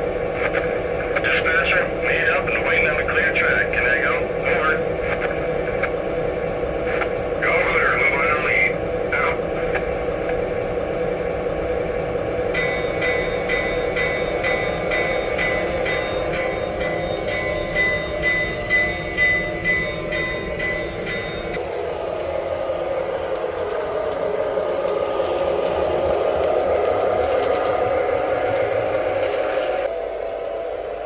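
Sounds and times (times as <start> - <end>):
diesel engine drone revving: 0.0 - 31.0
locomotive bell ringing: 12.5 - 21.9.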